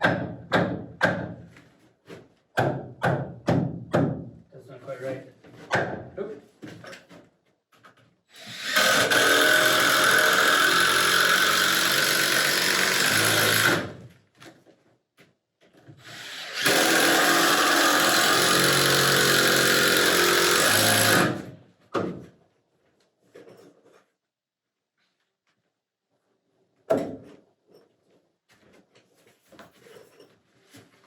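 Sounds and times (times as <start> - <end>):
power tool spinning: 8.4 - 14.0, 16.0 - 21.5.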